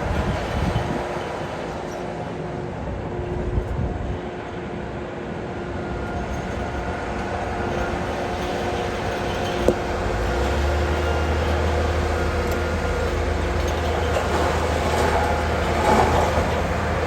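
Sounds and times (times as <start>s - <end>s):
diesel engine running: 6.5s - 17.0s.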